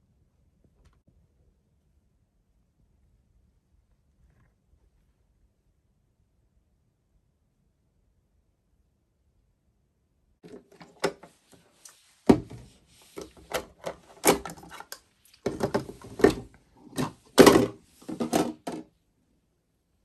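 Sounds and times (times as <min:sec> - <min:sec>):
knocks and clattering handling noises: 0:10.4 - 0:11.6, 0:12.2 - 0:18.9.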